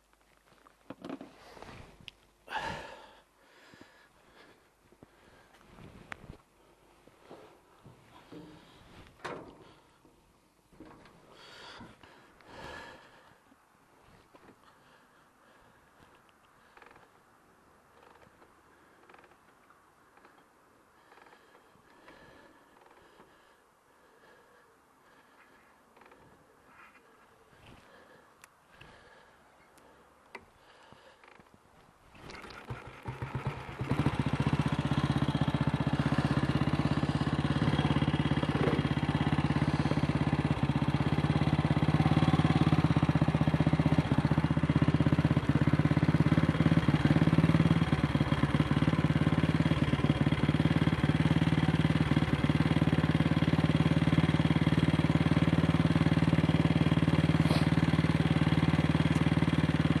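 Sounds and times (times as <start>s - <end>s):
motorcycle engine running: 32.2s - 60.0s.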